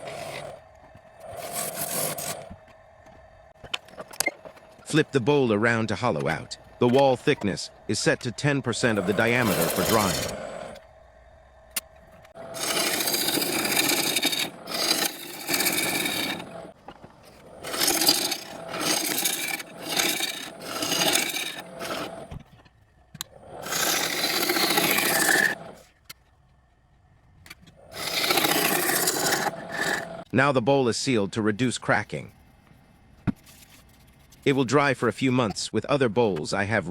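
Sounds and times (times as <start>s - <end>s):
gouge cutting wood on lathe: 0.0s - 0.6s, 1.2s - 2.5s, 7.0s - 10.8s, 12.3s - 22.4s, 23.4s - 25.8s, 27.8s - 30.3s.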